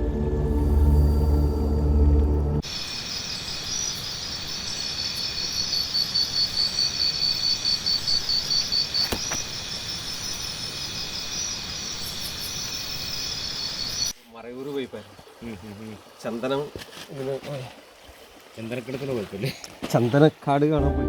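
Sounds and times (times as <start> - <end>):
insect chirping in rapid pulses: 2.6 - 14.1
insects trilling: 2.6 - 14.2.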